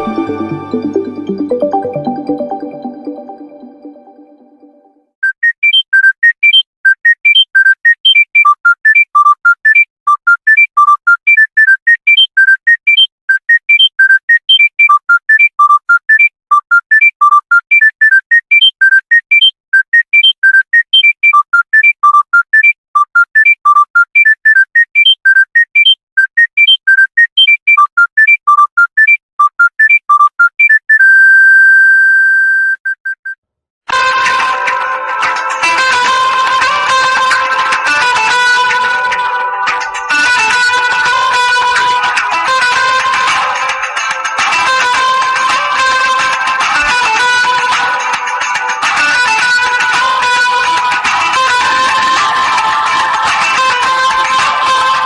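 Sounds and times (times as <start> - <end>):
plucked guitar ringtone: 0.0 - 4.9, 34.0 - 55.0
mobile phone ringtone: 0.0 - 31.3, 34.0 - 55.0.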